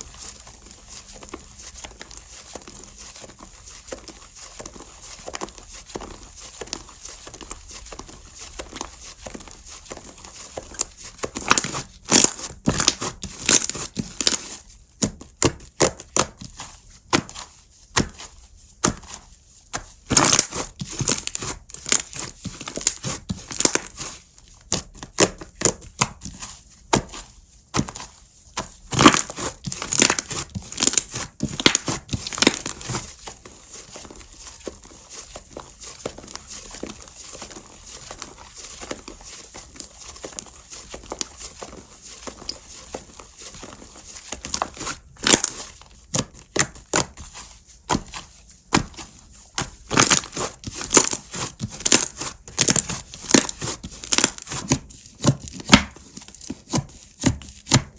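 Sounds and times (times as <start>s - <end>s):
sticky pops and crackles: 10.6s - 14.4s, 19.8s - 24.0s, 27.8s - 33.1s, 44.4s - 47.2s, 47.9s - 56.0s.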